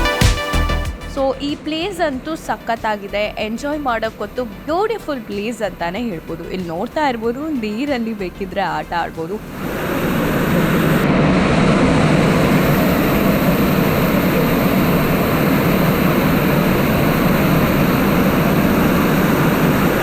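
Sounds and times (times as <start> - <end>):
waterfall roaring: 9.5 - 20.0.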